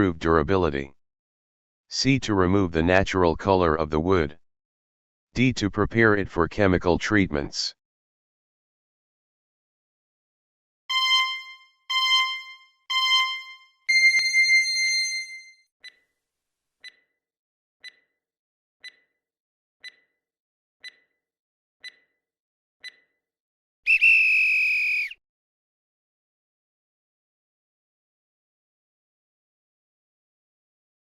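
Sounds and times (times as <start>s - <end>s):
loud electronic alarm tone: 10.9s - 15.5s
short electronic beeps: 10.9s - 16.0s
soft ticks: 16.8s - 17.0s, 17.8s - 18.1s, 18.8s - 19.1s, 19.8s - 20.1s, 20.8s - 21.1s, 21.8s - 22.1s, 22.8s - 23.1s.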